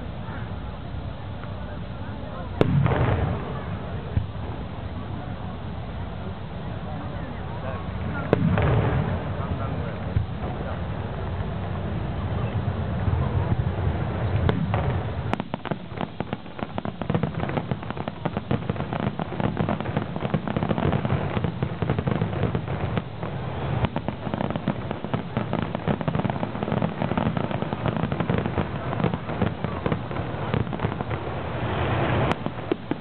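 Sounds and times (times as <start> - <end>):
fireworks popping and banging: 1.4 - 33.0.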